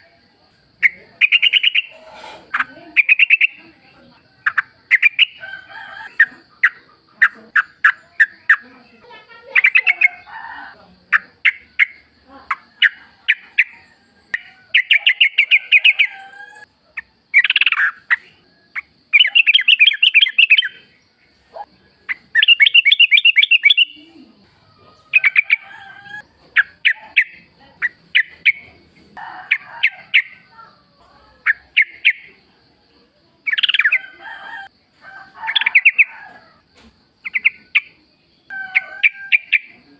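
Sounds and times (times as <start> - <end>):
bird calling and chattering: 0.8 - 5.4, 6.0 - 10.3, 11.1 - 24.3, 25.1 - 28.8, 31.4 - 32.4, 33.4 - 34.2, 35.5 - 36.1, 37.2 - 38.0, 38.7 - 39.9.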